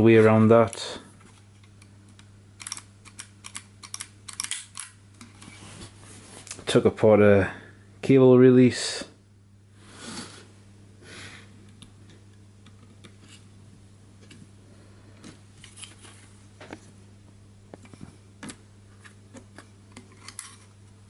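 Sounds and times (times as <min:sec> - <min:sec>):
steady low hum: 0:00.0 - 0:21.0
small camera clicks: 0:02.6 - 0:05.0.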